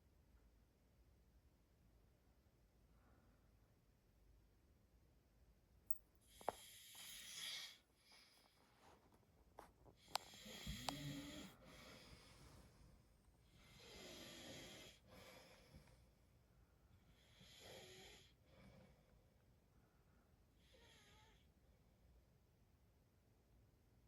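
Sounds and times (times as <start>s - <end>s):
man snoring: 10.3s - 11.6s.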